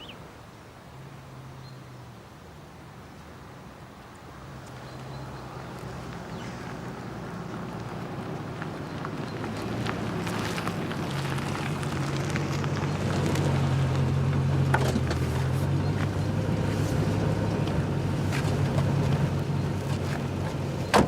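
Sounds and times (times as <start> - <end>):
car engine humming: 4.9 - 21.0.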